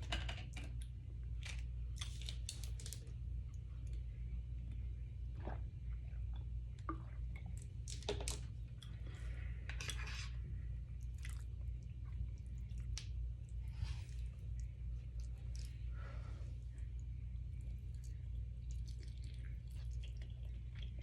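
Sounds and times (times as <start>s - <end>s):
steady low hum: 0.0s - 21.0s
person chewing food: 11.0s - 16.0s, 17.5s - 21.0s.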